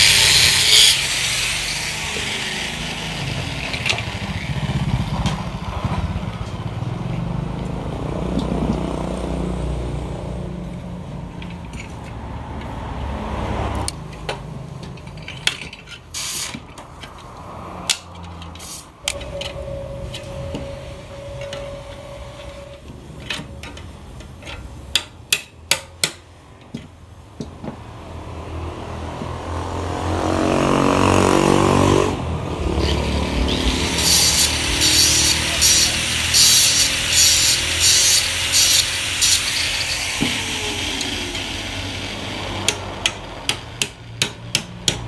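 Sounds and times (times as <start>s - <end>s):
angle grinder cutting metal: 0.0s - 5.6s, 32.5s - 43.9s.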